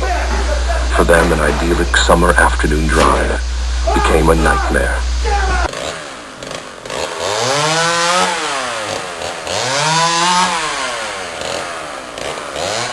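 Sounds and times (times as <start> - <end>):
chainsaw revving: 5.6 - 12.9.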